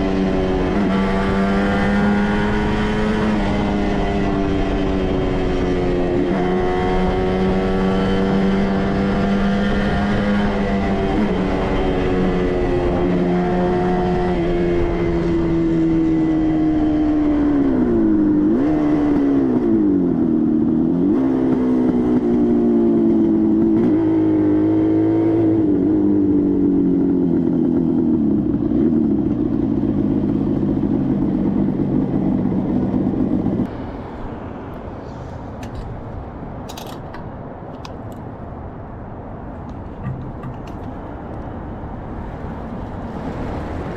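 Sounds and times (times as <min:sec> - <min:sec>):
motorcycle engine running: 0:26.6 - 0:33.6, 0:39.7 - 0:41.4.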